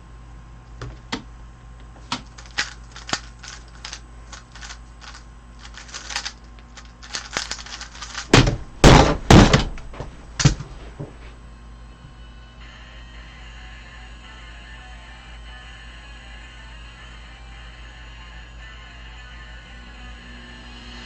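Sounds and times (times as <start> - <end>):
puzzle cube clicking: 2.1 - 8.3.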